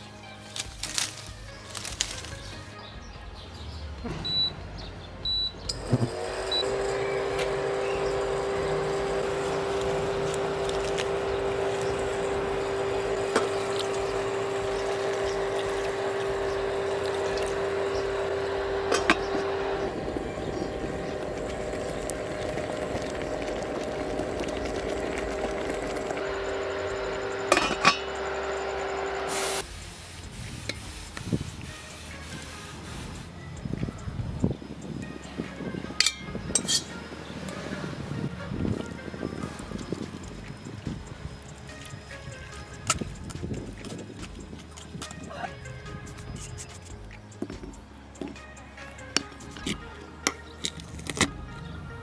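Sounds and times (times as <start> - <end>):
tap water running: 5.7 - 33.1
steady hum: 5.7 - 50.6
dishes clinking: 36.0 - 37.0.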